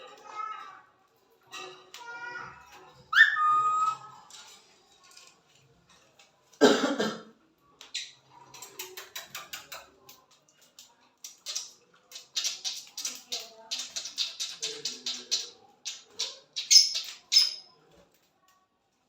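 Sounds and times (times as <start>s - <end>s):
birds chirping and chattering: 3.0s - 4.8s, 7.8s - 17.8s.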